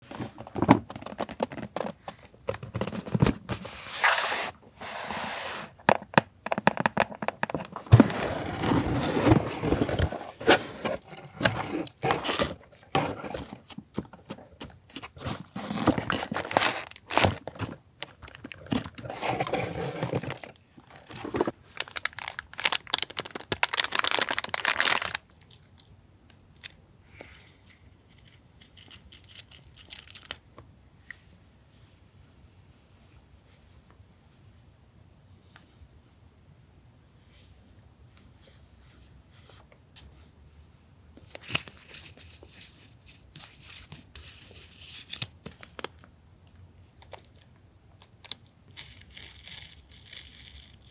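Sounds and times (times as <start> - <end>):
paper crinkling and tearing: 15.0 - 25.2.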